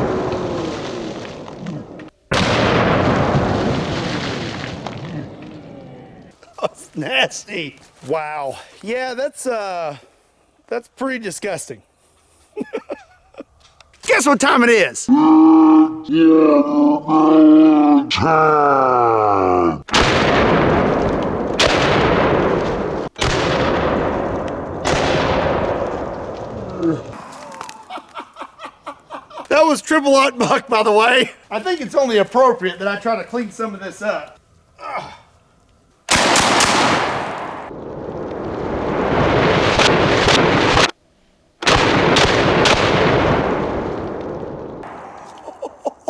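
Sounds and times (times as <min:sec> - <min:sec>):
shotgun blasts: 0:02.3 - 0:05.6, 0:19.9 - 0:26.2, 0:36.1 - 0:37.7, 0:39.0 - 0:41.0, 0:41.6 - 0:45.4
loud shotgun shots echoing: 0:36.1 - 0:37.7, 0:39.5 - 0:40.9, 0:41.6 - 0:44.1.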